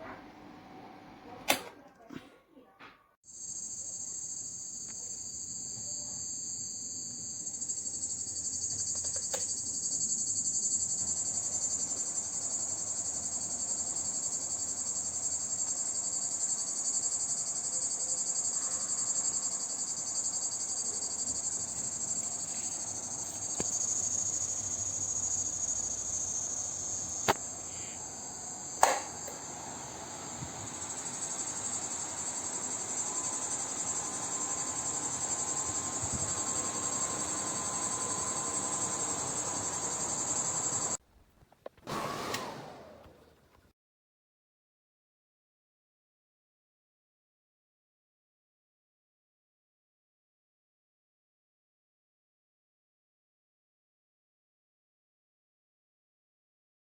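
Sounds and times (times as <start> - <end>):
crickets chirping: 3.3 - 41.0
sharp clicks: 28.7 - 29.5.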